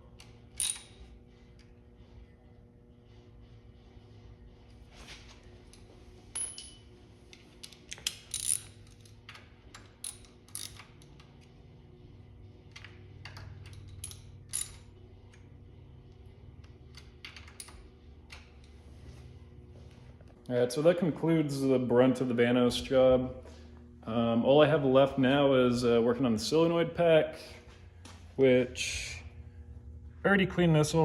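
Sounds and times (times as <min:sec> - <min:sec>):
metal tools clinking on metal: 0:07.6 - 0:11.2.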